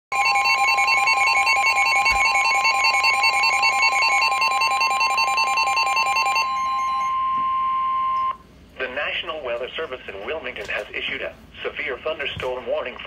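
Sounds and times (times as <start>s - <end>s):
rapid electronic beeping: 0.1s - 7.1s
steady warning tone: 0.1s - 8.4s.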